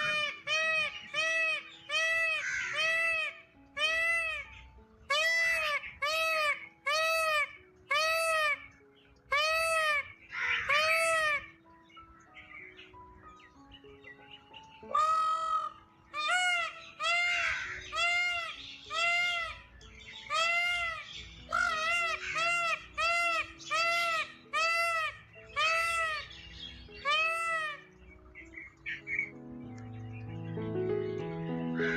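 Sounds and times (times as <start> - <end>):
peacock calling: 0.0 - 29.4
faint background music: 0.0 - 31.9.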